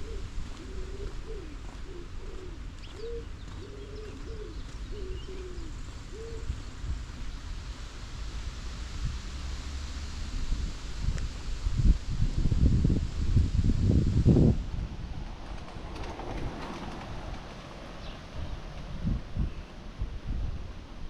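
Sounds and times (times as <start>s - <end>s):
pigeon cooing: 0.0s - 6.5s.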